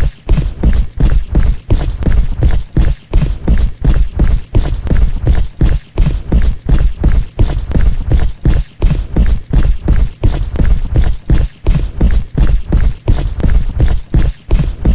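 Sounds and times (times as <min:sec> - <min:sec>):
heavy footsteps thudding: 0:00.0 - 0:14.9.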